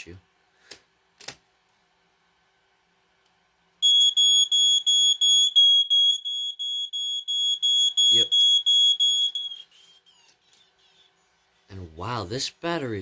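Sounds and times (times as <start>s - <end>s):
smoke alarm pulsing beep: 3.8s - 9.9s.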